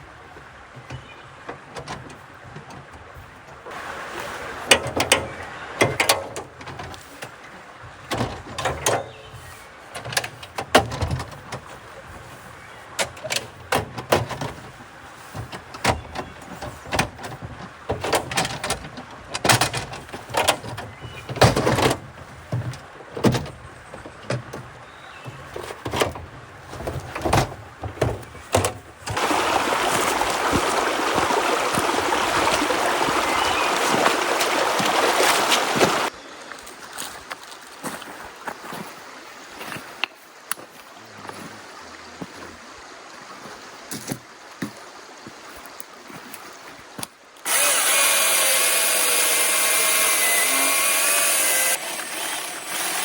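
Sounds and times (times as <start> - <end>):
stream water rushing: 0.0 - 28.0, 28.6 - 53.0
camp gear clicking and clunking: 0.3 - 3.9, 4.7 - 36.1, 46.2 - 53.0.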